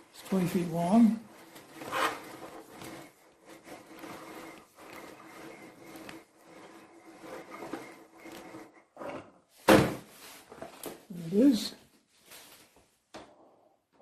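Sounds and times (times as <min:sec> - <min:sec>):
power cord rubbing and scraping: 0:00.0 - 0:09.5.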